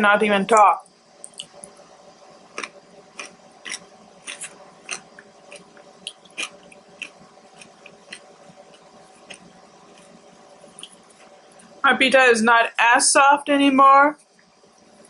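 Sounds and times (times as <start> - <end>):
person chewing food: 2.5 - 11.7.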